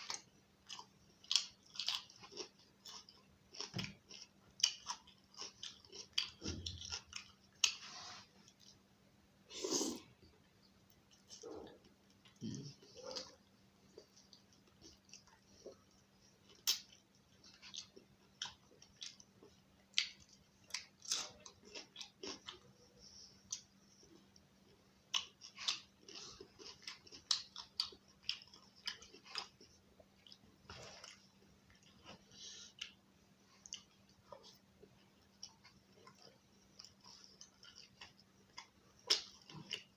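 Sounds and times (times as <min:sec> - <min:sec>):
wet chewing and lip-smacking: 0:00.0 - 0:08.8, 0:25.1 - 0:39.9.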